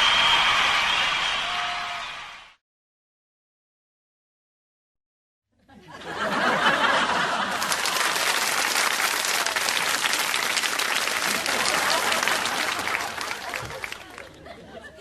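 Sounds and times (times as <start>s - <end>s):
crowd applauding: 0.0s - 2.6s, 6.3s - 14.6s.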